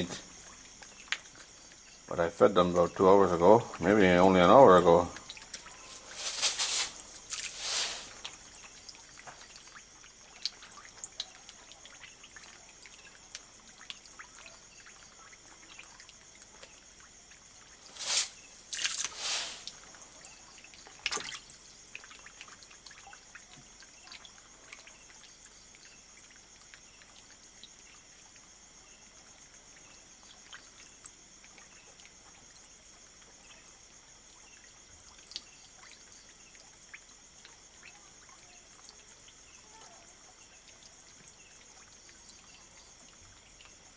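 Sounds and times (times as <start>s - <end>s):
water trickling and dripping: 0.0s - 43.9s
fish splashing at the surface: 5.2s - 9.8s, 17.8s - 20.0s, 20.8s - 21.6s.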